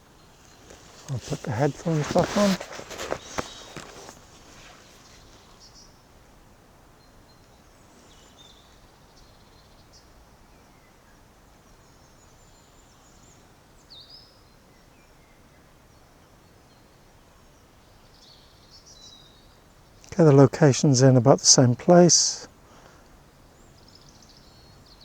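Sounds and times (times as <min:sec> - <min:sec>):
distant road traffic rumble: 0:00.3 - 0:05.6
high bird calls: 0:00.4 - 0:05.8.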